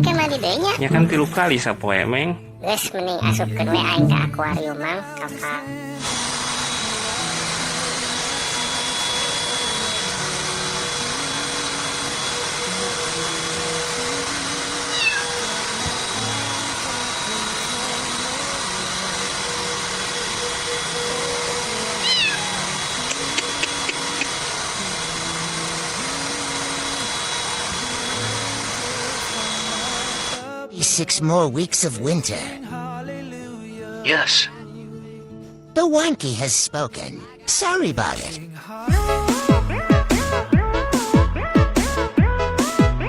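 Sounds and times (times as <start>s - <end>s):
soft background music: 0.0s - 39.4s
cat meowing: 14.9s - 15.4s, 22.0s - 22.7s.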